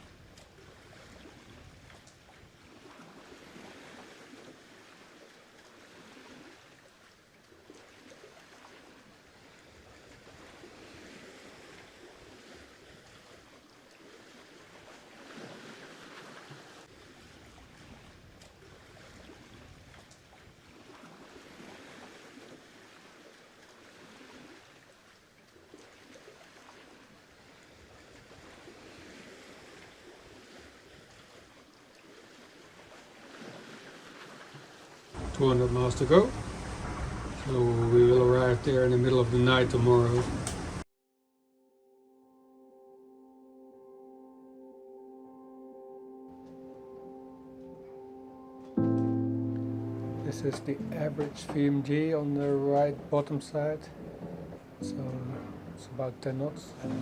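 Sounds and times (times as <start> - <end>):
sea water splashing along hulls: 0.0 - 40.9, 46.3 - 57.0.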